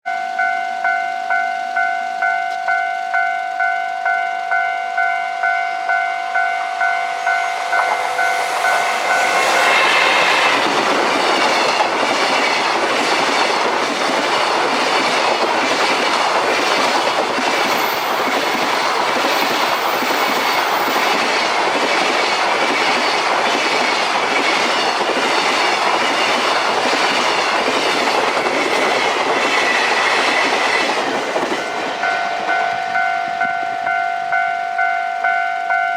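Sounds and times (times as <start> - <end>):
level crossing warning bell: 0.0 - 10.6, 31.5 - 35.9
freight train passing: 0.1 - 35.9.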